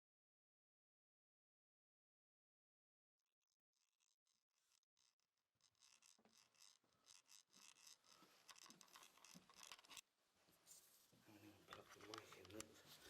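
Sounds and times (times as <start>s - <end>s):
faint rustling and scratching: 5.6s - 13.0s.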